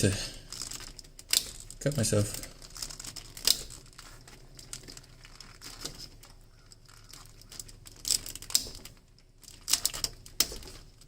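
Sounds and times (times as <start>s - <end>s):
plastic zip tie clicking and crinkling: 0.4s - 11.0s.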